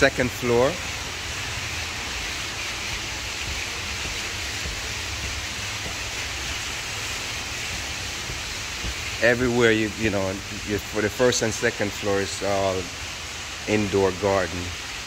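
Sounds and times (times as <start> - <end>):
indoor waterfall rushing: 0.0 - 15.0.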